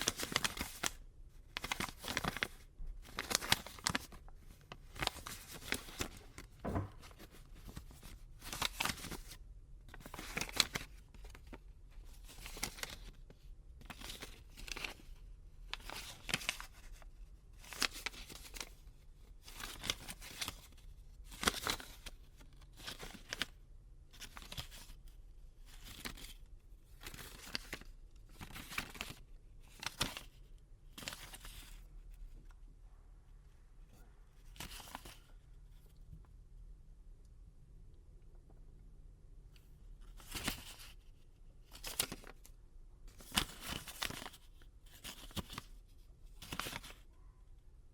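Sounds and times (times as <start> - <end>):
banknotes rustling: 0.0 - 9.4, 13.9 - 17.0, 19.4 - 23.6, 27.0 - 31.8, 34.4 - 35.3, 40.1 - 41.0, 41.7 - 42.5, 43.1 - 47.1.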